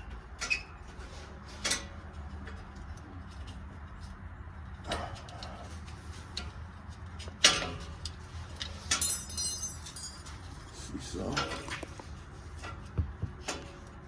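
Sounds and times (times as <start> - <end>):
metal tools clinking: 7.4 - 12.8.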